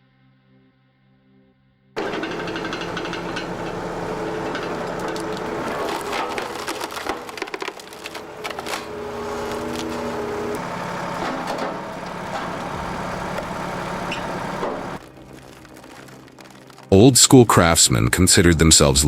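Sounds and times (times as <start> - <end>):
wood chipper engine humming: 2.0 - 17.0
wood cracking and splintering: 2.0 - 18.0.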